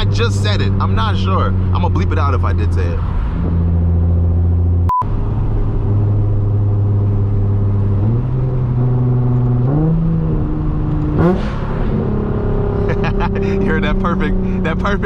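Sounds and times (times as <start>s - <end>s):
car engine accelerating: 0.0s - 15.0s
engine revving in throttle blip: 6.9s - 15.0s.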